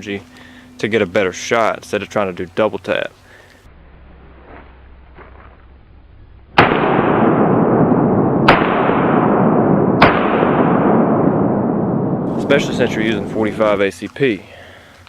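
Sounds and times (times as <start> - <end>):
pistol shots: 6.6 - 11.9
loud steady rushing noise: 12.2 - 13.9.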